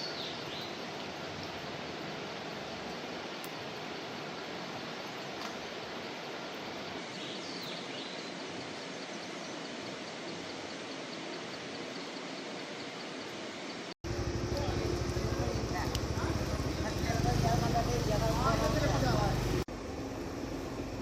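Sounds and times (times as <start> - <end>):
mountain stream rushing: 0.0 - 19.7.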